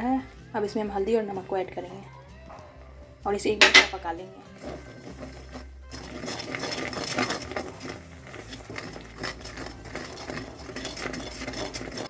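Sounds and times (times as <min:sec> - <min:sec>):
spoon scraping a pot: 0:03.6 - 0:12.0.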